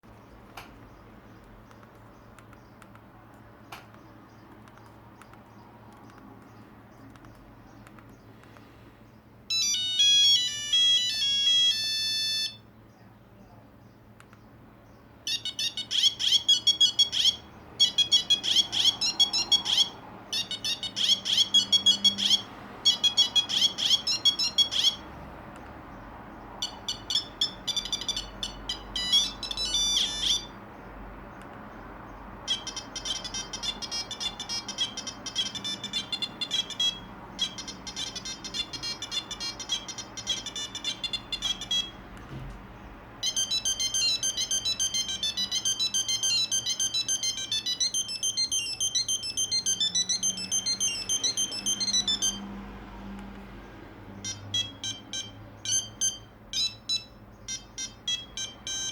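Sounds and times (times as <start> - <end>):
mobile phone ringtone melodies: 9.5 - 12.7, 15.2 - 25.5, 26.6 - 30.8, 32.4 - 42.2, 43.2 - 53.1, 54.0 - 58.9.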